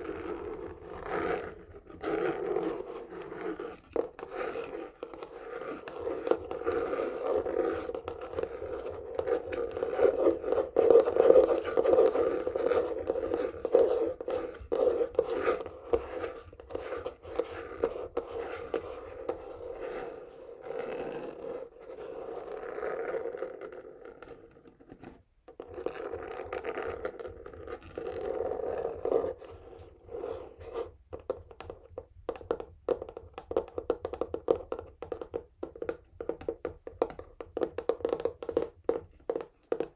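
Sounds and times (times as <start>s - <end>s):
fingernails scratching cardboard: 0.1s - 30.9s.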